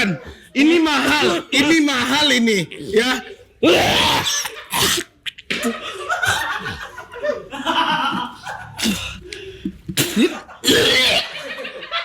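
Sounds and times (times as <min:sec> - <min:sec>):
person coughing and spluttering: 0:03.7 - 0:06.9, 0:08.8 - 0:09.2, 0:09.8 - 0:11.4
laughter: 0:04.4 - 0:08.8, 0:10.2 - 0:12.0.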